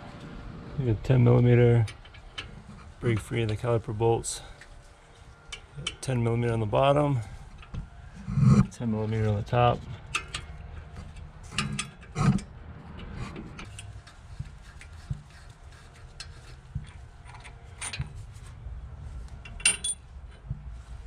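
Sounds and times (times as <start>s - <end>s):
metal tools clinking: 19.4s - 20.1s.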